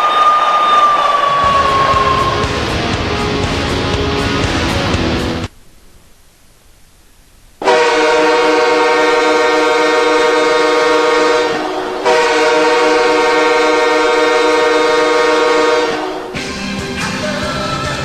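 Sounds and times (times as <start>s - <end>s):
arena goal horn blasts: 7.6s - 16.4s.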